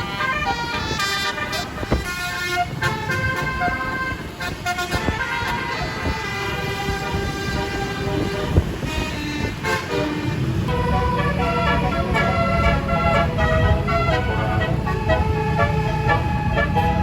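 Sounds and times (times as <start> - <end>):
bus engine rumble: 0.0 - 17.0
multi-tone bus horn playing tune: 0.0 - 17.0.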